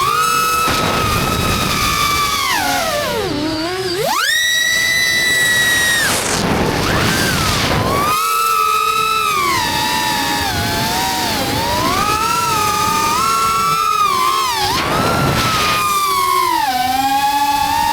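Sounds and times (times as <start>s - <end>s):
drone motors whining: 0.0s - 17.9s.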